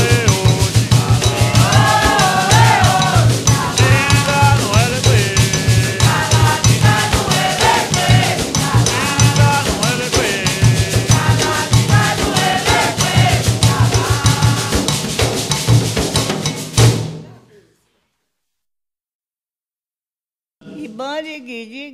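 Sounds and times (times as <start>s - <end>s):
group singing: 0.0s - 15.6s
drums in fast rhythm: 0.0s - 17.3s.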